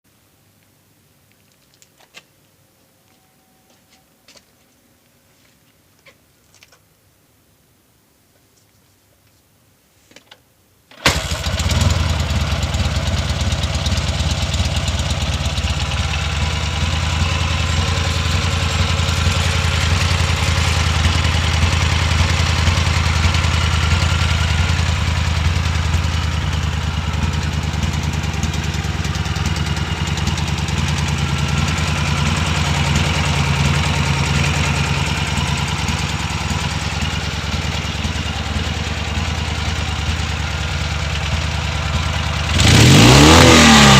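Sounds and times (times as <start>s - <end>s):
motorcycle engine starting and idling: 10.9s - 43.9s.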